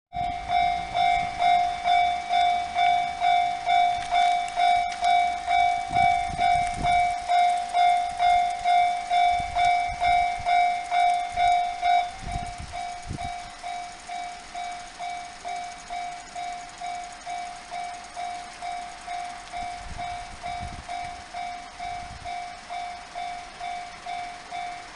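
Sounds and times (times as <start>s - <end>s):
level crossing warning bell: 0.1s - 24.9s
low rumbles: 0.2s - 24.6s.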